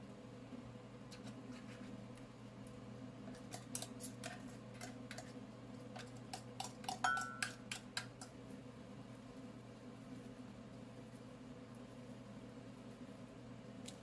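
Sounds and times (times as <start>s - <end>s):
clicks and taps of food preparation: 1.1s - 8.4s.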